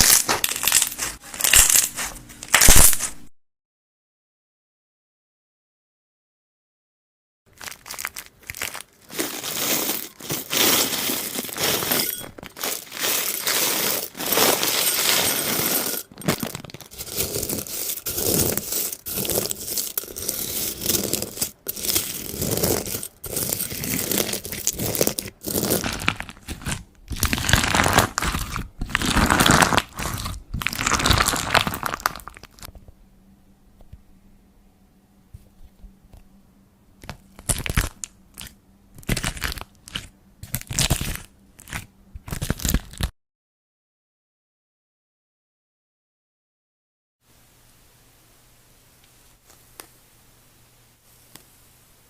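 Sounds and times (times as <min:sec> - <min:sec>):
slime crackling and popping: 0:00.0 - 0:03.2, 0:07.6 - 0:10.2, 0:22.0 - 0:32.7, 0:37.4 - 0:43.1.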